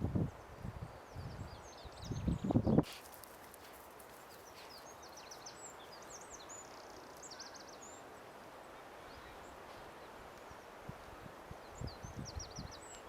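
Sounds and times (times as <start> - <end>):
low background hiss: 0.0 - 13.0
small birds twittering: 0.9 - 10.7.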